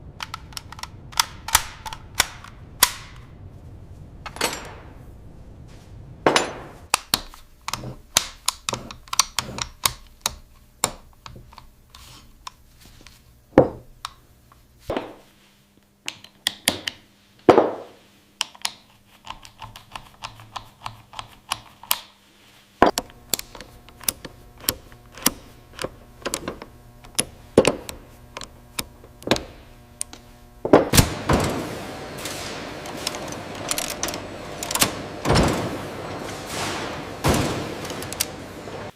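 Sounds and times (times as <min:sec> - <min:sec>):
faint machine hum: 0:00.0 - 0:38.9
metal parts and hand tools clattering: 0:04.3 - 0:05.0, 0:06.3 - 0:06.9, 0:30.8 - 0:38.9.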